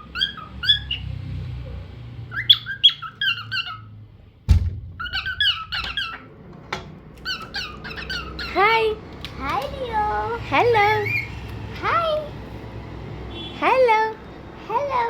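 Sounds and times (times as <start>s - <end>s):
cockatiel chirping: 0.0s - 1.0s, 2.3s - 3.9s, 5.0s - 6.3s, 7.2s - 8.6s
sharp knock: 4.5s - 5.0s.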